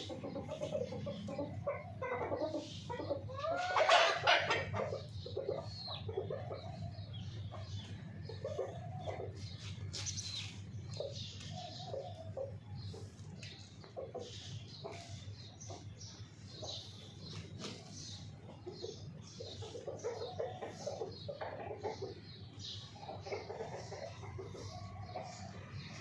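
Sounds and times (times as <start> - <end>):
hens squawking: 0.0 - 6.9
hens clucking: 0.0 - 26.0.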